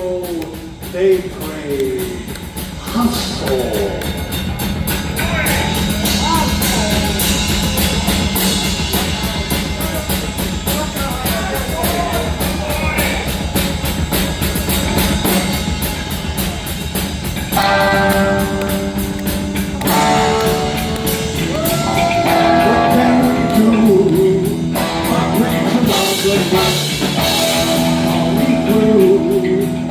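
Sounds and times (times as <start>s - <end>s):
distorted electric guitar: 0.0s - 29.9s
drum kit beat: 0.0s - 29.9s.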